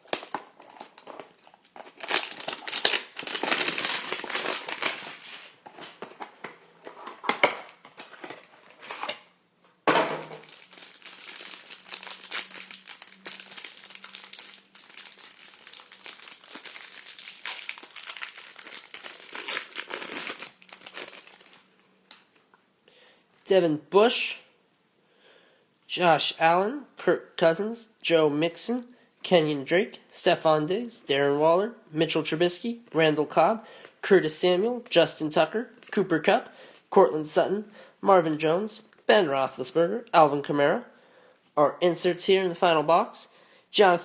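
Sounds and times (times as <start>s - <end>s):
packaging tearing and crinkling: 0.0s - 5.4s, 10.2s - 21.6s.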